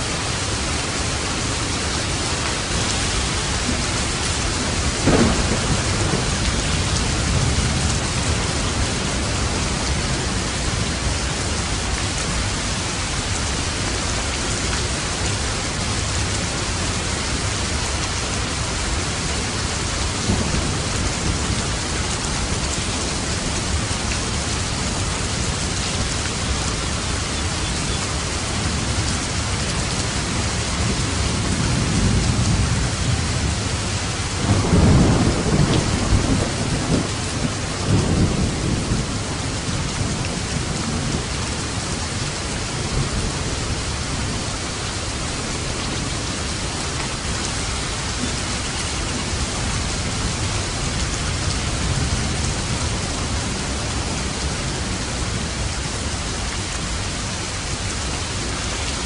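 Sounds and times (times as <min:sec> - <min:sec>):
heavy rain hissing: 0:00.0 - 0:59.0
thunder rumbling: 0:02.2 - 0:12.4, 0:19.6 - 0:41.9.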